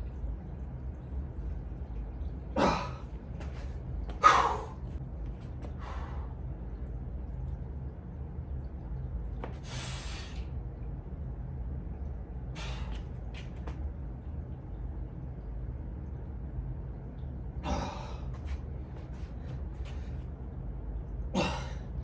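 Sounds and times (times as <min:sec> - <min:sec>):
steady low hum: 0:00.0 - 0:22.0
person breathing hard: 0:04.2 - 0:05.0.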